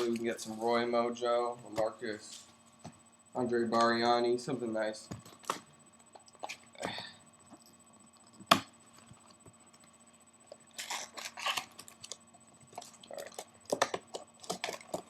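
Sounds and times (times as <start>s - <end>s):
packaging crinkling and rustling: 10.6s - 15.0s.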